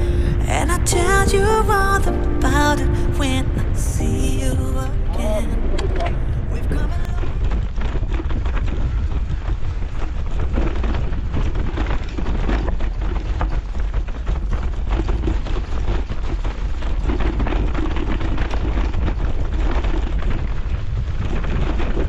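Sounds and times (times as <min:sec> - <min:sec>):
wind buffeting microphone: 0:00.0 - 0:22.0
bike frame rattling: 0:07.3 - 0:22.0.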